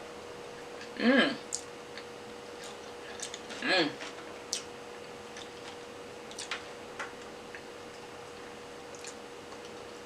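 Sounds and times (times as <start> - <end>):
faint steady hum: 0.0 - 10.0
mouth clicks and wet chewing: 6.3 - 6.6, 8.9 - 9.7.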